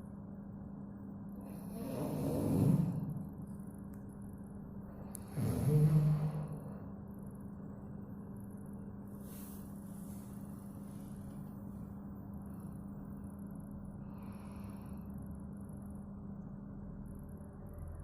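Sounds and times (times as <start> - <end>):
steady low hum: 0.0 - 18.0
person snoring: 1.4 - 3.3, 5.2 - 6.8
faint breaths: 14.0 - 15.4.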